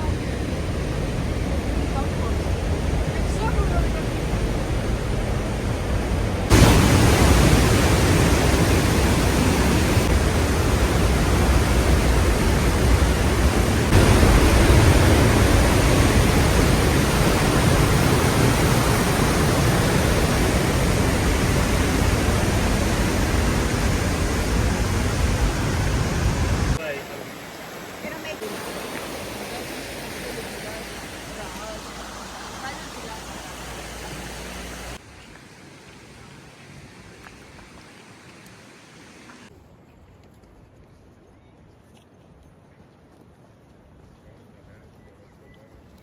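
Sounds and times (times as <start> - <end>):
waterfall roaring: 0.0 - 35.0.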